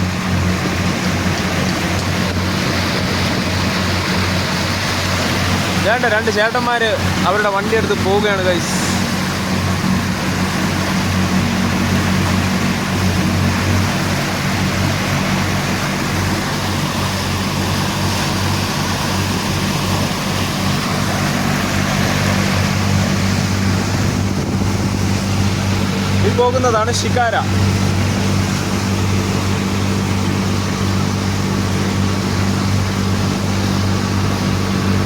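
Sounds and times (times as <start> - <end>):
ferry engine humming: 0.0 - 35.0
rushing water: 0.0 - 35.0
wind noise: 9.0 - 35.0.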